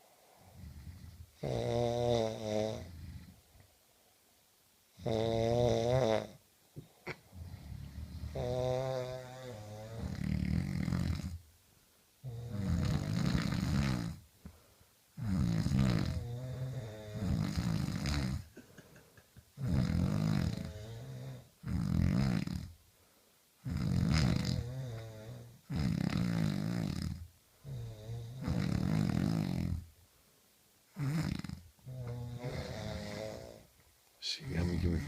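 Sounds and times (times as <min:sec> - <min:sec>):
people snoring loudly: 0:00.5 - 0:03.3, 0:05.0 - 0:06.4, 0:07.3 - 0:11.4, 0:12.2 - 0:14.2, 0:15.2 - 0:18.5, 0:19.6 - 0:22.7, 0:23.6 - 0:29.8, 0:31.0 - 0:33.7.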